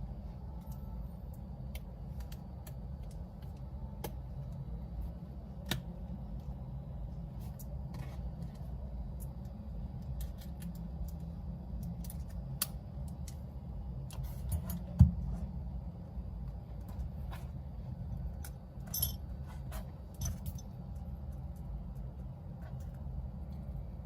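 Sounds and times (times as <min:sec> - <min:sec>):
steady low hum: 0:00.0 - 0:24.0
small metallic jingle: 0:18.8 - 0:19.3.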